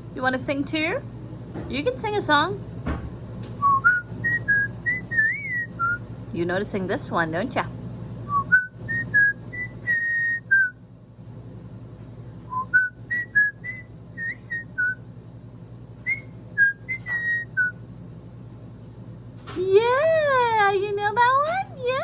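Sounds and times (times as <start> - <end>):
parrot whistling a tune: 3.6 - 6.0, 8.3 - 10.8, 12.5 - 15.0, 16.1 - 17.8.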